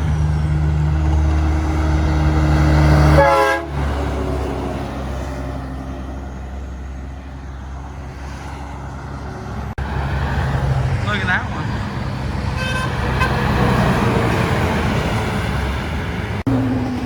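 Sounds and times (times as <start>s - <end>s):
diesel truck passing: 0.0s - 17.0s
truck horn blast: 1.4s - 4.1s, 12.5s - 14.2s.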